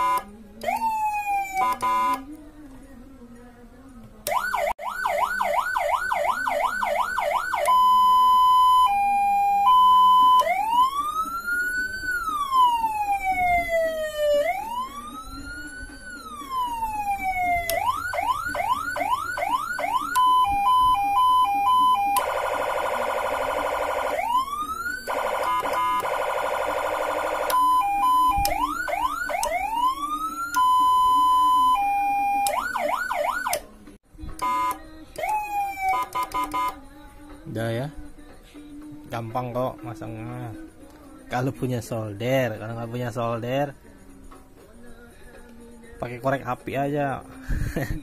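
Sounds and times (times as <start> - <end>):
electronic siren tones: 0.0 - 2.2, 4.3 - 33.6, 34.4 - 36.8.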